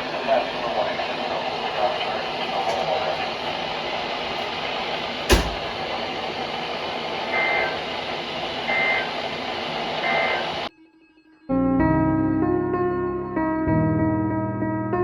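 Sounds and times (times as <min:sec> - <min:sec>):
radio static hiss: 0:00.0 - 0:10.7
chirping data bursts: 0:05.3 - 0:10.7.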